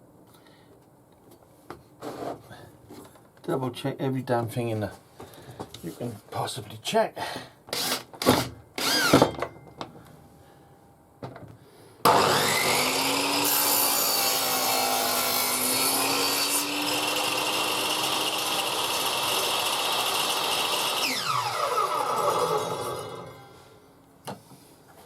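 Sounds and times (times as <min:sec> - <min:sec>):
table saw cutting wood: 0:08.8 - 0:09.2, 0:12.1 - 0:23.6.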